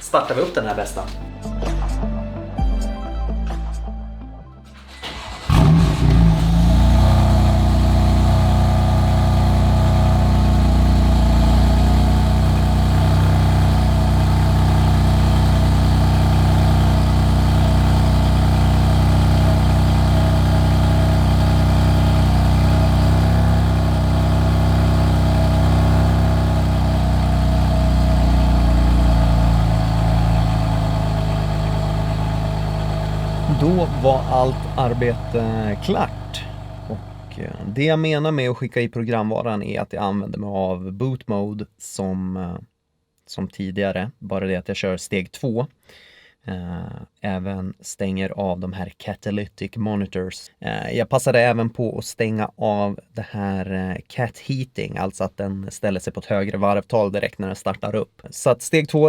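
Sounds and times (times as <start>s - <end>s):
car engine starting and idling: 0.0s - 1.2s, 4.7s - 37.8s.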